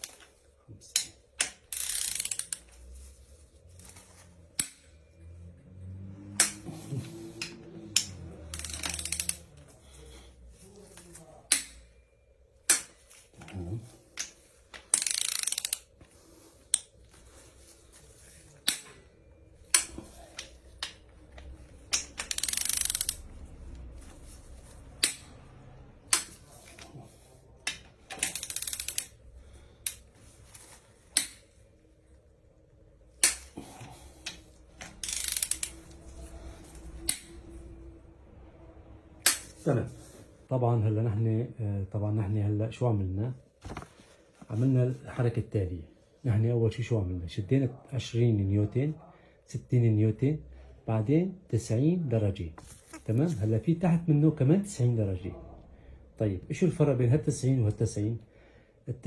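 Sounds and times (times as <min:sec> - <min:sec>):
socket ratchet clicking: 0:00.9 - 0:02.7, 0:06.4 - 0:06.6, 0:07.4 - 0:09.5, 0:14.9 - 0:15.9, 0:21.8 - 0:23.3, 0:25.0 - 0:25.3, 0:27.7 - 0:29.2, 0:34.3 - 0:35.9.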